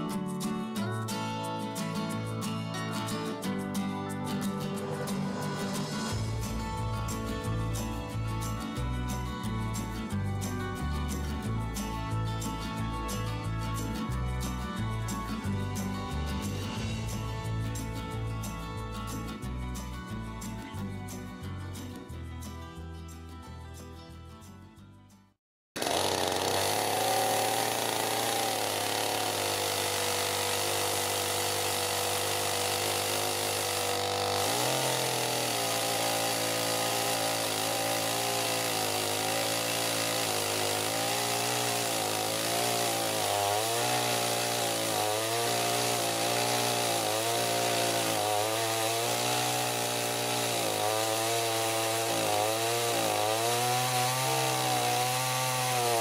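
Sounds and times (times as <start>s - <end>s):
chainsaw cutting wood: 4.8s - 18.2s, 25.8s - 56.0s.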